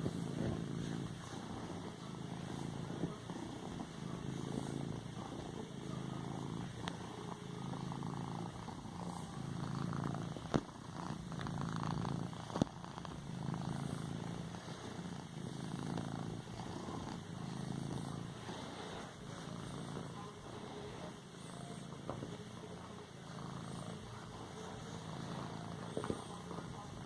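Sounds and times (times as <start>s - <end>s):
cat purring: 0.0s - 27.0s.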